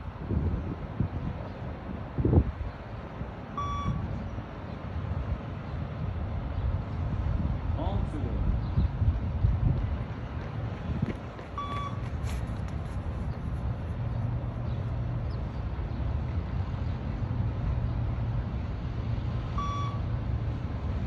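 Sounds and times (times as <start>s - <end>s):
wind rumble on microphone: 0.0s - 21.0s
short electronic beep: 3.6s - 4.0s, 11.6s - 12.0s, 19.6s - 20.1s.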